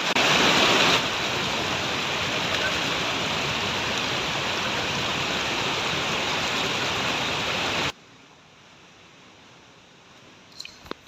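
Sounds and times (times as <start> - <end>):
waterfall rushing: 0.0 - 8.0.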